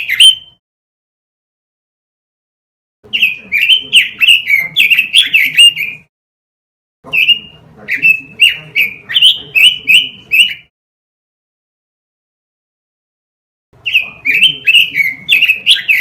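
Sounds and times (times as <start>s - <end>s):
bird singing whistled notes: 0.0s - 0.6s, 3.2s - 6.1s, 7.1s - 10.7s, 13.8s - 16.0s.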